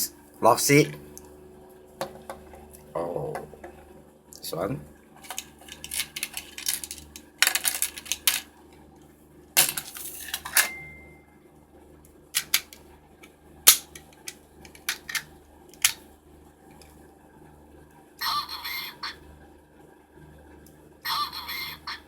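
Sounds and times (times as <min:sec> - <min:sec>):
plastic toy clicks and snaps: 0:12.4 - 0:12.8, 0:13.7 - 0:16.0.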